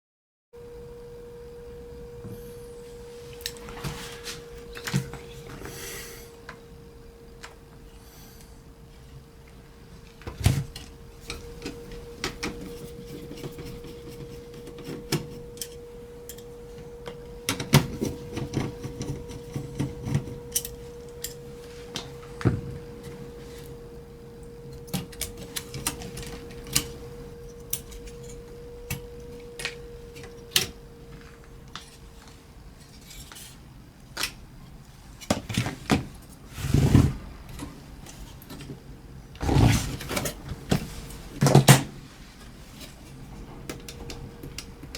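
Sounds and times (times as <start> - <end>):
faint steady tone: 0.6 - 35.2.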